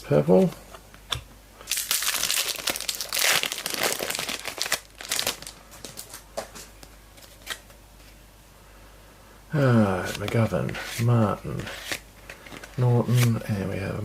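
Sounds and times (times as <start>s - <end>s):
wrapper crinkling and tearing: 1.6s - 6.2s.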